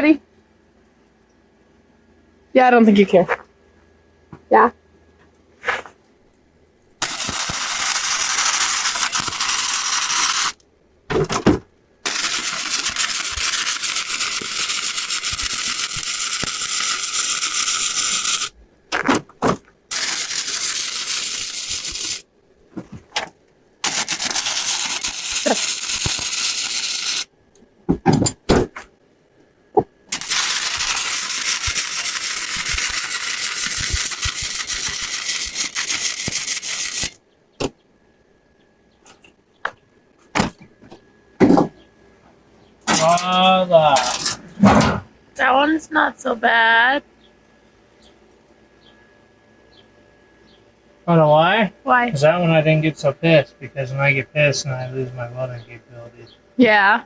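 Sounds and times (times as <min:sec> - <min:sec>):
welding arc crackling and hissing: 0:07.0 - 0:10.6, 0:12.0 - 0:18.6, 0:19.9 - 0:22.2, 0:23.8 - 0:27.3, 0:30.1 - 0:37.2
welding arc sputters and pops: 0:07.0 - 0:10.6, 0:12.0 - 0:27.3, 0:29.8 - 0:37.2.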